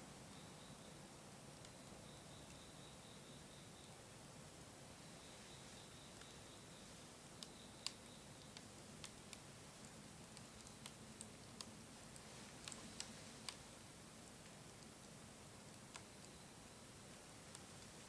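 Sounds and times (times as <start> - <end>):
low steady hiss: 0.0 - 18.0
wood fire crackling: 5.5 - 18.0.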